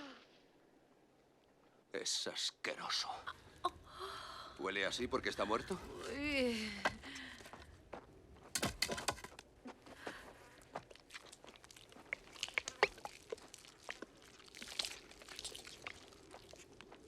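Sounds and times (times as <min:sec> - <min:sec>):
crunching: 0:08.4 - 0:17.0
wet clicking: 0:11.2 - 0:16.5.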